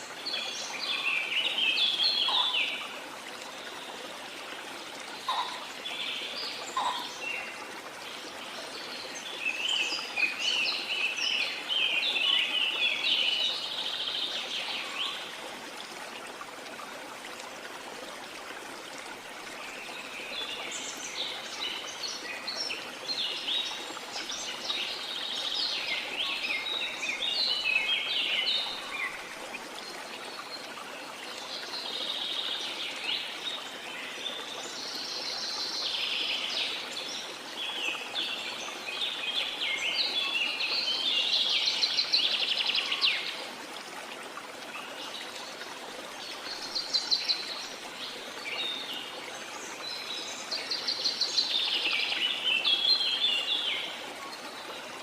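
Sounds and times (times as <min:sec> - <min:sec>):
birds chirping and trilling: 0:02.1 - 0:02.8, 0:05.2 - 0:07.4.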